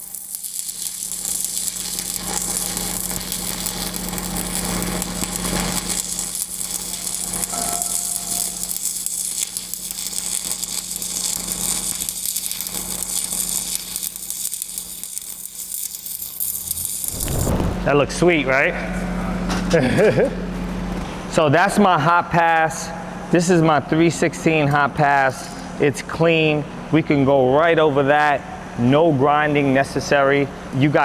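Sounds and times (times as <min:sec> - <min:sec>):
welding arc crackling: 0:00.0 - 0:18.5
electrical hum: 0:16.2 - 0:21.5.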